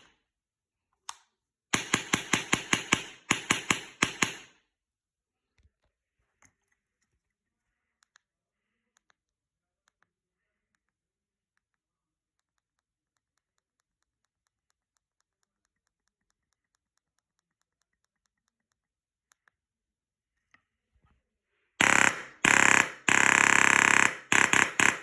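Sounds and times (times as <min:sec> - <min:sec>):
airsoft gun firing bursts: 0:01.7 - 0:04.6, 0:21.8 - 0:25.0
faint regular ticking: 0:07.9 - 0:19.7.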